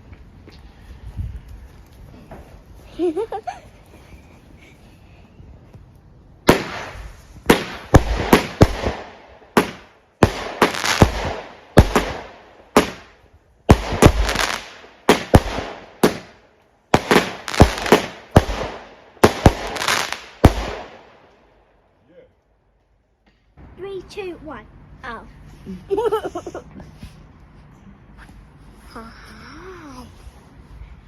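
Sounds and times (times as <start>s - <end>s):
fireworks bangs: 6.4s - 21.1s.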